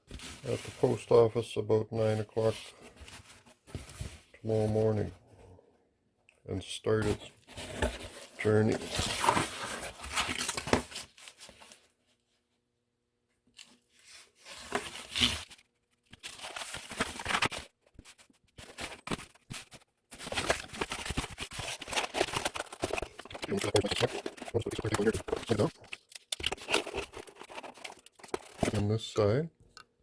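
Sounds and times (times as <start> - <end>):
cardboard tearing and crinkling: 7.6 - 11.6, 14.4 - 15.6, 16.2 - 28.8.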